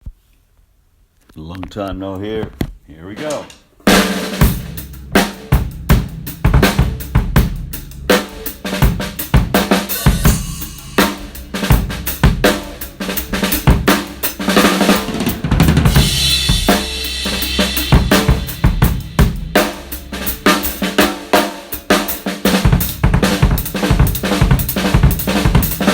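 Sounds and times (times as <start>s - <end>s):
drum kit groove: 2.2s - 25.9s
ringing cymbal wash: 4.4s - 22.1s.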